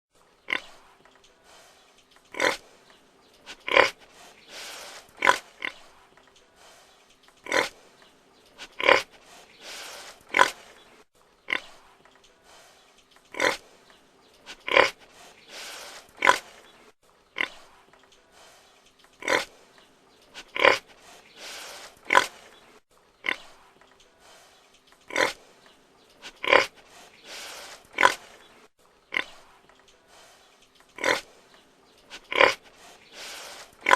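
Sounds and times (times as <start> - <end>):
pig grunting: 0.4 - 1.4, 2.2 - 6.5, 7.3 - 12.4, 13.2 - 23.8, 25.0 - 29.8, 30.8 - 33.9.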